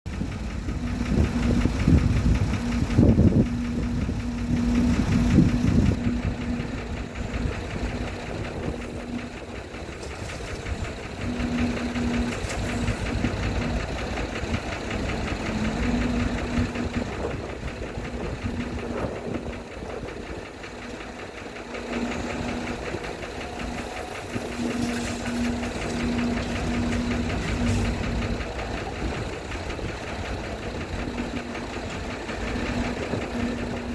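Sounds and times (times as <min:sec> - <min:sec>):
diesel engine running: 0:00.0 - 0:33.9.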